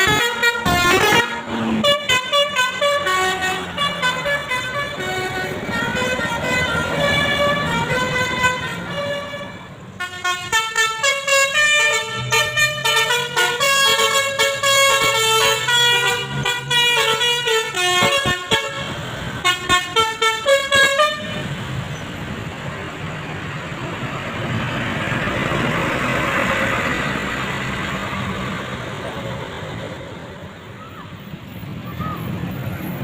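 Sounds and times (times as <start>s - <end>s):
musical air horns: 0.0s - 21.6s
engine and traffic noise: 0.0s - 33.0s.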